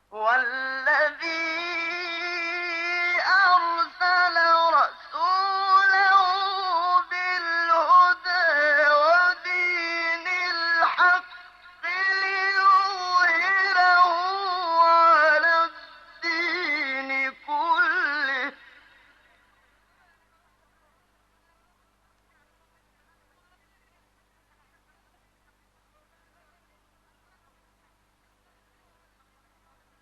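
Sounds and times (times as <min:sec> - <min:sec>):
man reciting melodically: 0:00.0 - 0:19.5.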